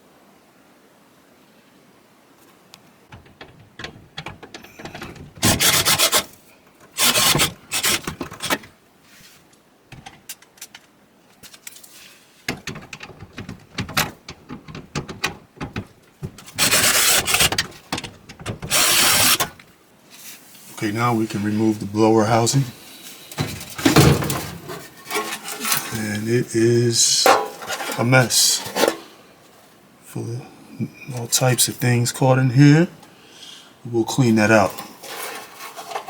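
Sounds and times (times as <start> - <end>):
clicks and handling knocks: 3.1 - 8.8, 9.9 - 19.7, 23.3 - 26.0, 27.2 - 29.1
screws rasping: 4.2 - 6.3, 7.0 - 8.2, 16.4 - 17.7, 18.4 - 19.6.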